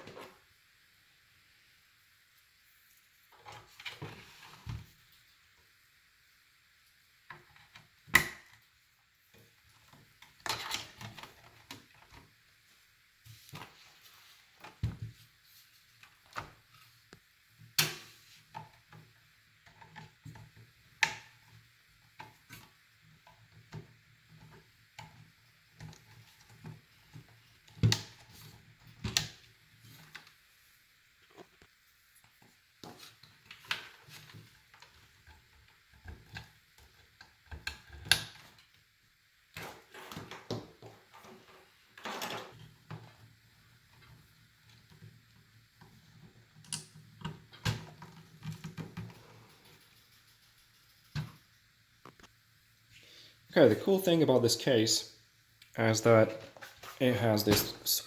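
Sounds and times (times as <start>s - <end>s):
faint handling noise: 55.8s - 58.0s.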